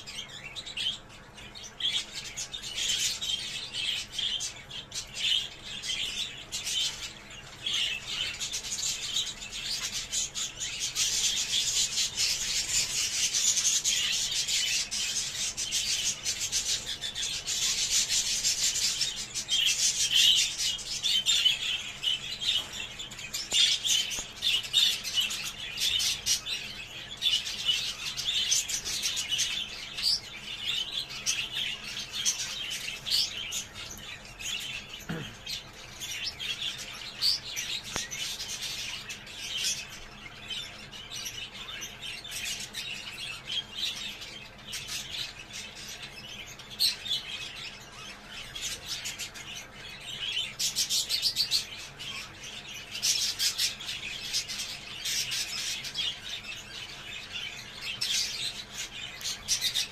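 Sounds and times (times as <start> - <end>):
budgerigars chattering: 0.0 - 59.9.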